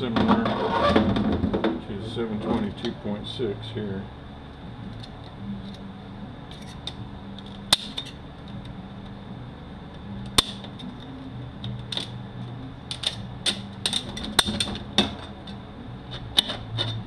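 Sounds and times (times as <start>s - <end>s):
steady low hum: 0.0s - 17.0s
metal parts clinking and knocking: 12.9s - 17.0s.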